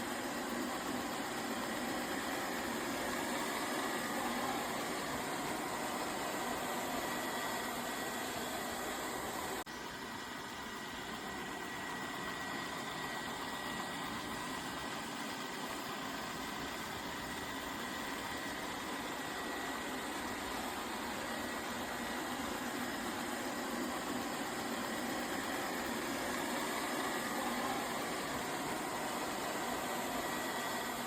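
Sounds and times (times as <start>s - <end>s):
machine running with whine: 0.0s - 31.0s.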